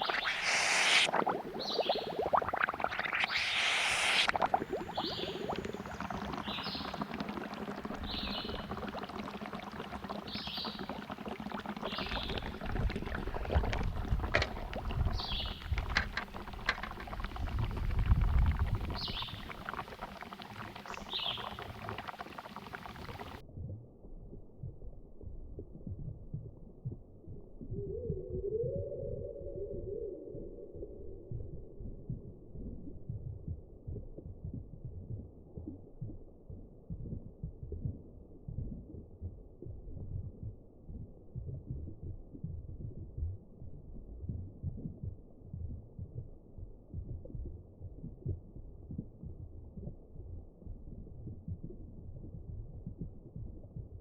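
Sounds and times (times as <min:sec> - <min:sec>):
smoke bomb hissing and bubbling: 0:00.0 - 0:23.4.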